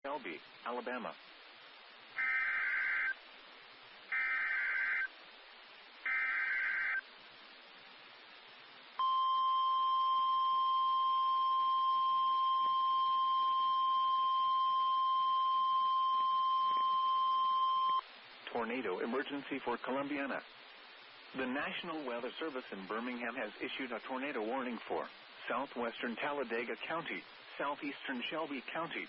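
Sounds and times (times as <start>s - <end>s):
steady attention tone: 9.0s - 18.0s.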